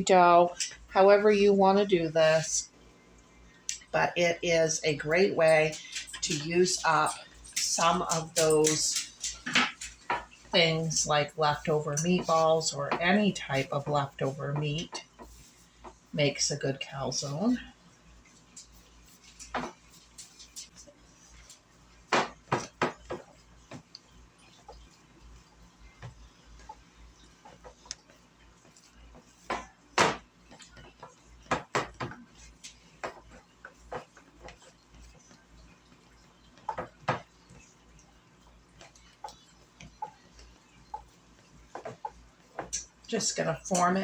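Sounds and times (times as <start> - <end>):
kitchen items clattering: 3.9 - 15.4.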